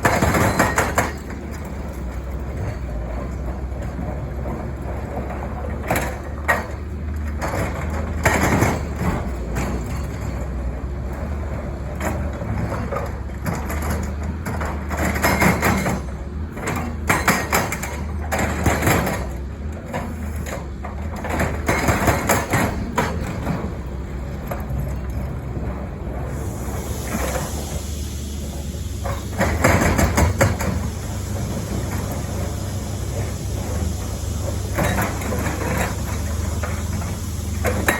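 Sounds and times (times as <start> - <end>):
hydraulic breaker hammering rock: 0.0 - 1.6, 13.5 - 19.4, 21.0 - 23.8, 29.1 - 30.9
excavator diesel engine running: 0.0 - 37.9.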